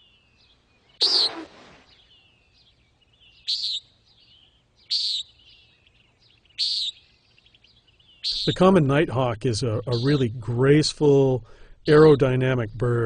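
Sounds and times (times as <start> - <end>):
nighthawk buzzy flight call: 1.0 - 1.8.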